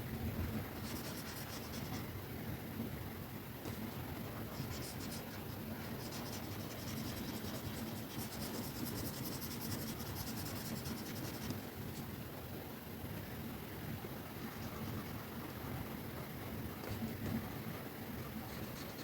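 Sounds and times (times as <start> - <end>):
low background noise: 0.0 - 19.0
stylus scratching on tablet: 0.8 - 2.1, 4.4 - 12.1, 18.5 - 19.0.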